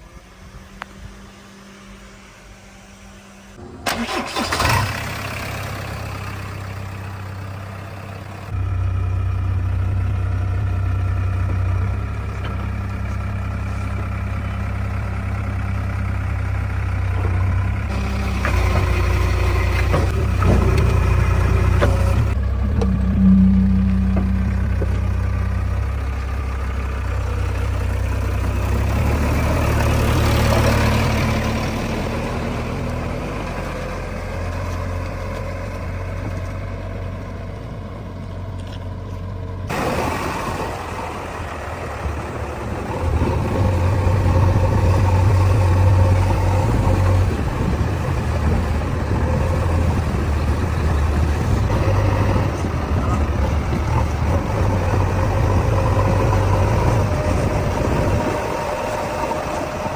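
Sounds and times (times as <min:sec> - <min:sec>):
diesel engines running: 0:00.0 - 0:59.9.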